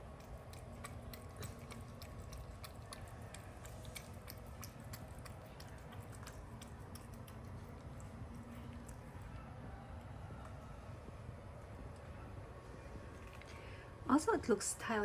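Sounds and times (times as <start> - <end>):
cat crunching food: 0.0 - 9.3.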